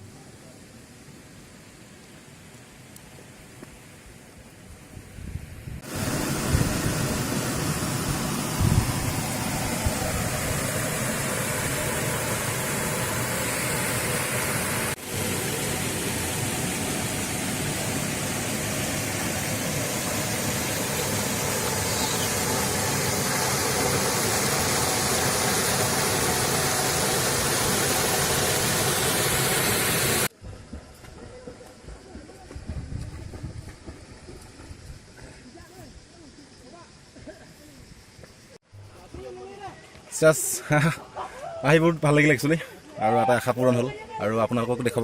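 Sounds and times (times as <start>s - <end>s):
waterfall rushing: 5.8s - 30.3s.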